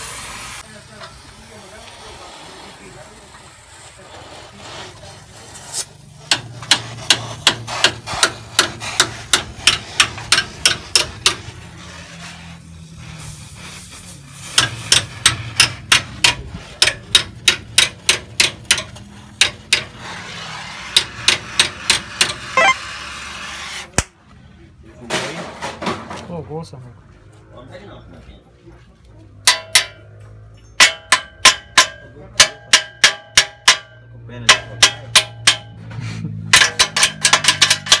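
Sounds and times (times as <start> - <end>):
hammer striking rapidly: 6.2 - 11.4, 14.6 - 19.9, 30.8 - 35.8.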